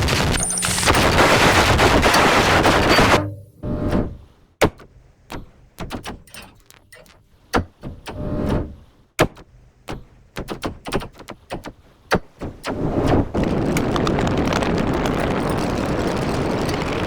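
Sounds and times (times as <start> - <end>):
sharp cracks and clicks: 0.0 - 3.3, 13.1 - 17.0
dense wall of noise: 12.8 - 17.0.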